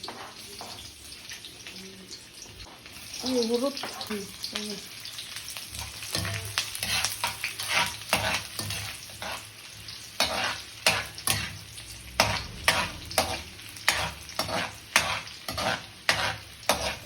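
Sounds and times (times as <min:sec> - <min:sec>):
food sizzling in hot oil: 0:00.0 - 0:17.0
utensil scraping a pan: 0:05.8 - 0:09.6, 0:10.2 - 0:17.0.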